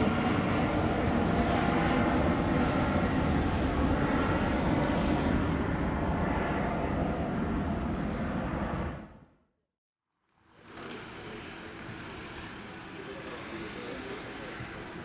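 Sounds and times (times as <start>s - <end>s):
jet engine hiss: 0.0s - 8.8s
jet engines rumbling: 0.0s - 9.2s.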